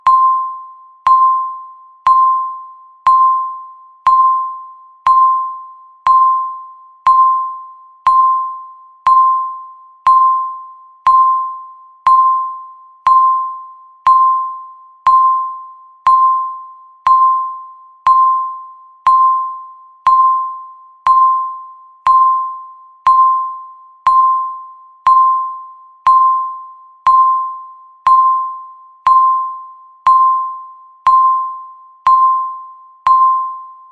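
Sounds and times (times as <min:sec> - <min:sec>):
electronic timer beeps: 0:00.0 - 0:33.9.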